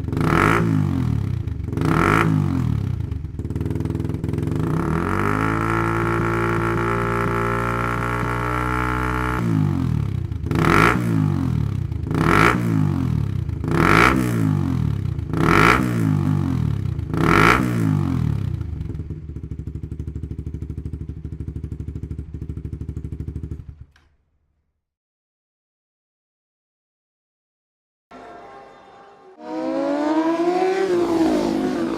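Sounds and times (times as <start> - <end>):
motorcycle engine revving: 0.0 - 24.1, 29.4 - 31.9
motorcycle engine idling: 0.0 - 24.6.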